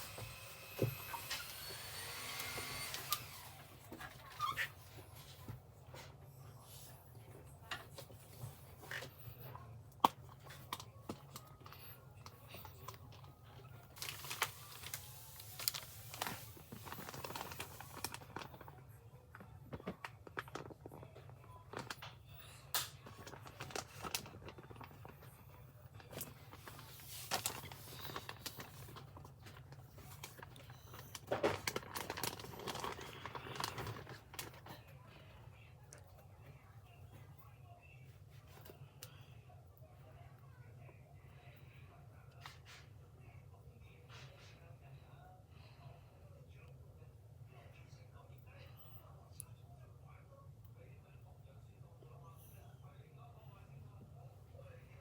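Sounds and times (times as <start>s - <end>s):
wrapping crinkling and tearing: 13.5s - 18.7s, 22.8s - 25.2s, 26.0s - 34.7s.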